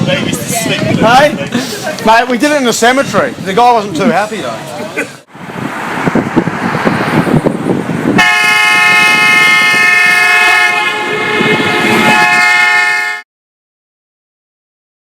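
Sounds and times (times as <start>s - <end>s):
rough rushing noise: 5.2s - 12.4s
air horn blasting chord: 8.2s - 13.3s.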